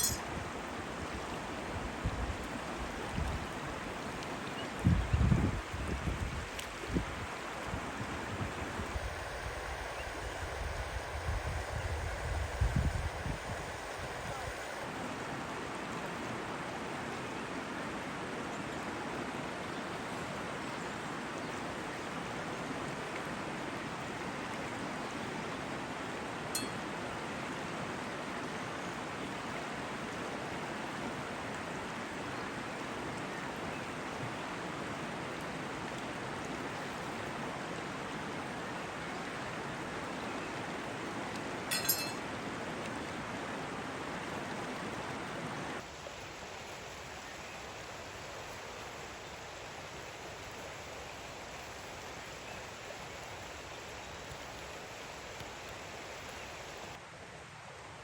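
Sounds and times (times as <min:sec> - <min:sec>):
short clink: 0:00.0 - 0:00.3, 0:26.6 - 0:26.8, 0:41.7 - 0:42.3
flowing water rushing: 0:00.0 - 0:57.2
thin hiss: 0:08.4 - 0:14.9, 0:45.9 - 0:57.0.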